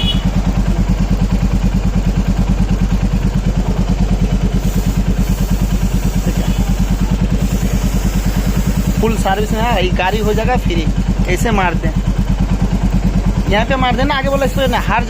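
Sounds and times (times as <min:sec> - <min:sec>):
motorcycle engine idling: 0:00.0 - 0:15.0
spray can hissing: 0:04.5 - 0:10.4, 0:14.2 - 0:15.0.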